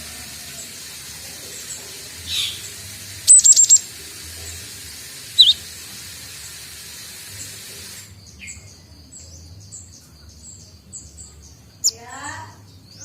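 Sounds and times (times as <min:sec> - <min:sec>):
steady hiss: 0:00.0 - 0:08.4
bird chirping: 0:01.5 - 0:03.8, 0:05.4 - 0:05.6, 0:08.1 - 0:13.0.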